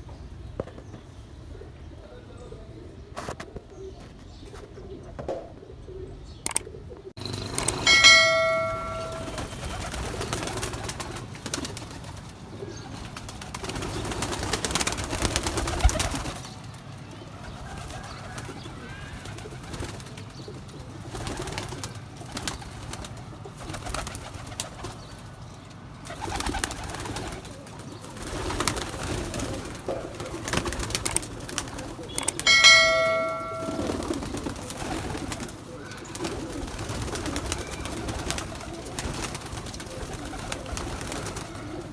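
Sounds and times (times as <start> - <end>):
pigeons cooing: 0.0 - 41.9
loud clear ringing tone: 7.4 - 9.9, 32.2 - 34.5.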